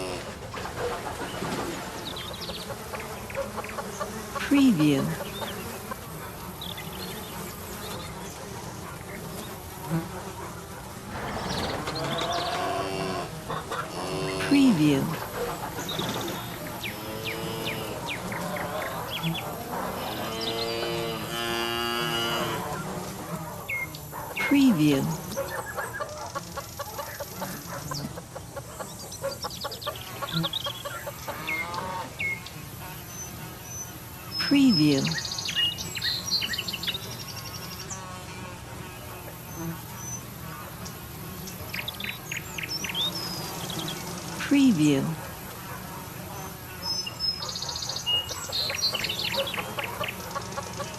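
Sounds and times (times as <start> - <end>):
flies buzzing: 0.0 - 50.9
small birds chirping: 0.0 - 50.9
cattle mooing: 11.1 - 15.2, 19.9 - 22.8.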